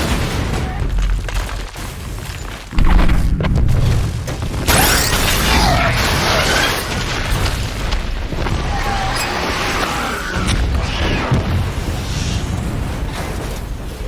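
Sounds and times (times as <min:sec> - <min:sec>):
explosion boom: 0:02.8 - 0:09.1
sharp blast with heavy rumble: 0:02.8 - 0:14.0.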